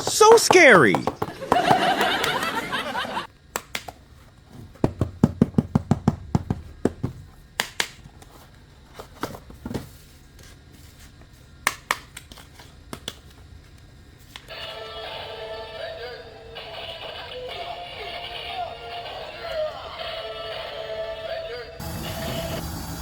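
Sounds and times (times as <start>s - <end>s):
plastic toys clicking and knocking: 0.0s - 2.4s.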